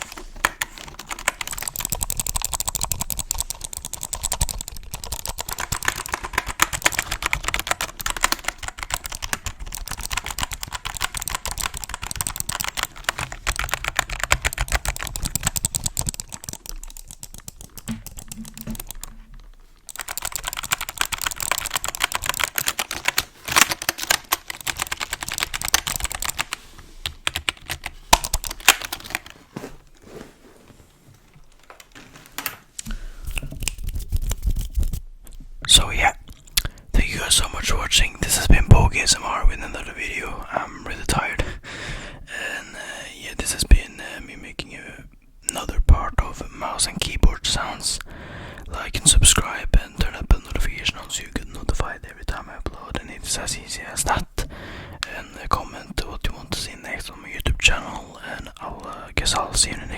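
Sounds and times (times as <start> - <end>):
fast typing on keyboard: 0.0 - 29.3, 33.4 - 35.0.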